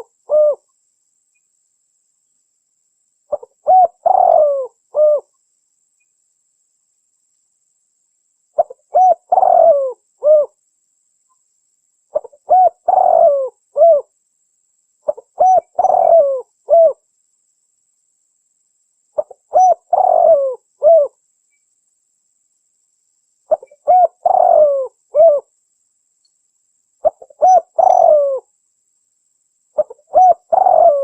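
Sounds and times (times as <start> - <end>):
dove cooing: 0.0 - 0.7, 3.3 - 5.3, 8.6 - 10.6, 12.1 - 14.1, 15.1 - 17.0, 19.2 - 21.2, 23.5 - 25.5, 27.0 - 28.5, 29.8 - 31.0.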